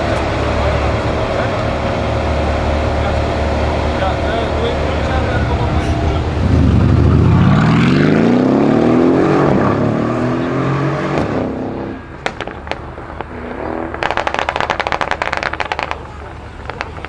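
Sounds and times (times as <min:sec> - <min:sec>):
car engine accelerating hard: 0:00.0 - 0:16.8
exhaust pops and crackles: 0:11.1 - 0:17.0.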